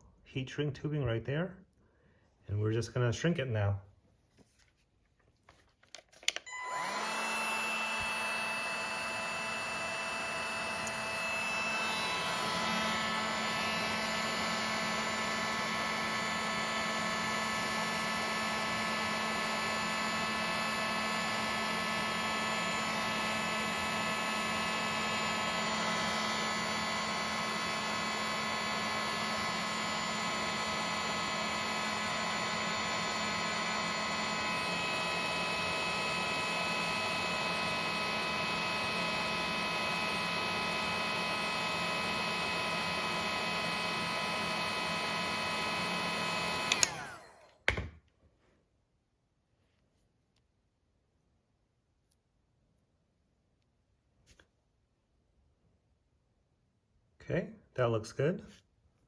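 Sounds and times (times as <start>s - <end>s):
heat gun fan whine: 6.2s - 47.9s
heat gun switch click: 10.8s - 11.0s, 46.7s - 47.0s.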